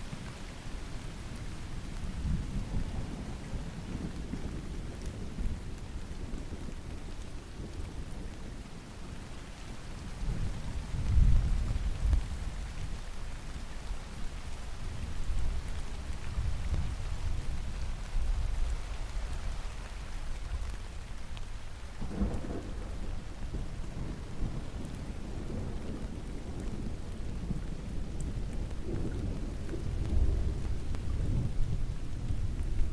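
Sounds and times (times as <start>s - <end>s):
steady rain: 0.0s - 32.9s
thunder rumbling: 22.0s - 32.9s.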